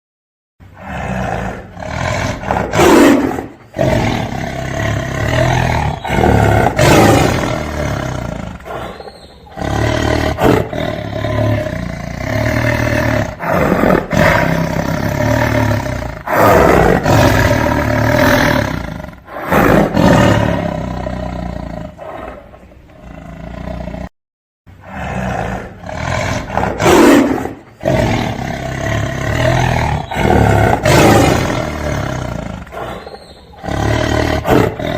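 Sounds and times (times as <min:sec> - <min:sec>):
tiger roaring: 0:00.6 - 0:24.1, 0:24.7 - 0:34.9.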